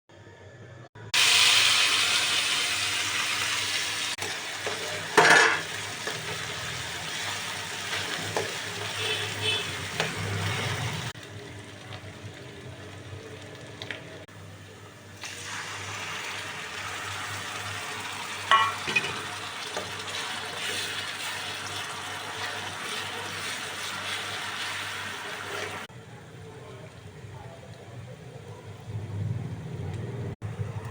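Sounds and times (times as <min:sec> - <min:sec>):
food sizzling in hot oil: 0:01.2 - 0:14.3, 0:15.2 - 0:25.9.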